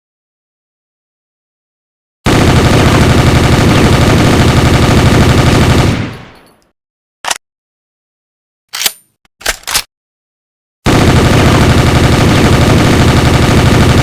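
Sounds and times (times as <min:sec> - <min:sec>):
submachine gun full-auto burst: 0:02.3 - 0:06.1, 0:10.9 - 0:14.0.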